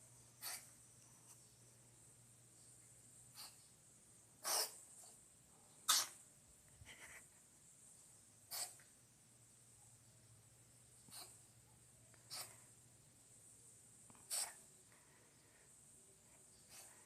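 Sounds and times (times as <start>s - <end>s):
cat sneezing: 4.4s - 4.8s, 5.9s - 6.2s, 8.5s - 8.8s, 14.3s - 14.6s.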